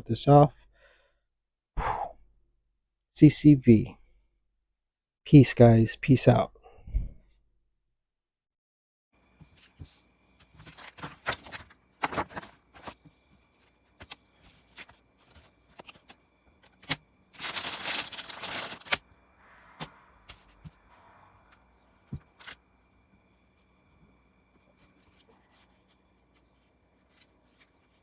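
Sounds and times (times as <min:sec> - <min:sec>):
handling rustling: 0:09.4 - 0:19.1, 0:19.8 - 0:20.9.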